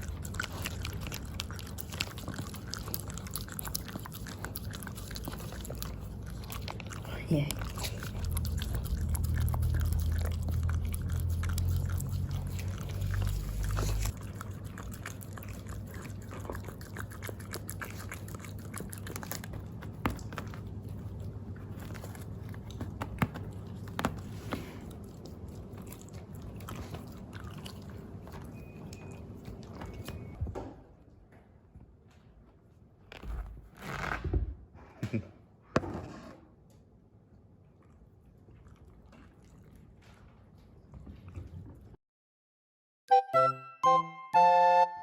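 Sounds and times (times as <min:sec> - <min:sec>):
dog licking and smacking: 0:00.0 - 0:30.4, 0:37.8 - 0:41.9.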